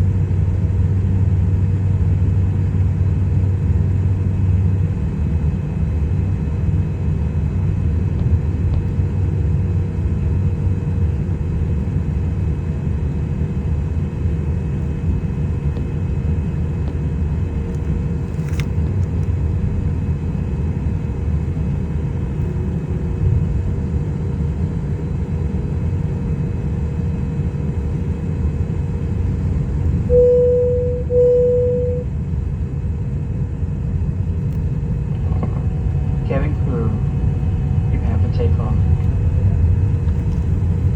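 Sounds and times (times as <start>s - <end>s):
airliner rumbling on the ground: 0.0s - 40.9s
faint constant whine: 14.5s - 40.9s.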